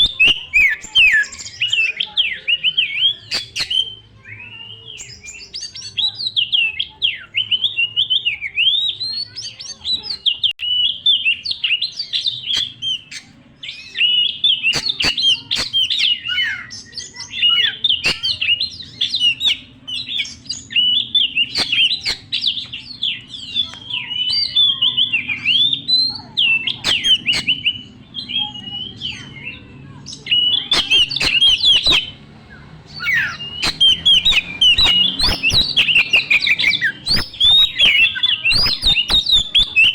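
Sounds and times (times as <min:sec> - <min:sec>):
sharp bird clicks: 0:00.0 - 0:01.6, 0:03.2 - 0:03.9, 0:14.4 - 0:16.2, 0:17.9 - 0:19.6, 0:20.8 - 0:22.9, 0:26.7 - 0:27.8, 0:30.3 - 0:32.2, 0:32.9 - 0:39.9
songbird singing varied whistles: 0:00.0 - 0:39.9.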